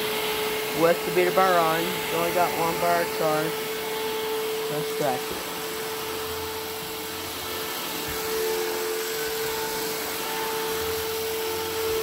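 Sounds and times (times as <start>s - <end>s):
stick vacuum running on carpet: 0.0s - 12.0s
vacuum brush roll rumbling: 0.5s - 12.0s.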